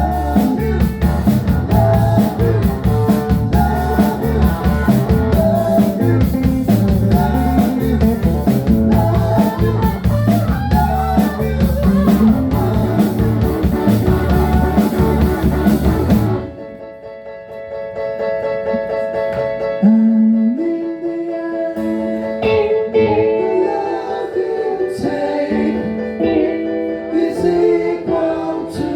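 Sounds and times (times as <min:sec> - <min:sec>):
rock band playing: 0:00.0 - 0:17.0, 0:21.9 - 0:23.9.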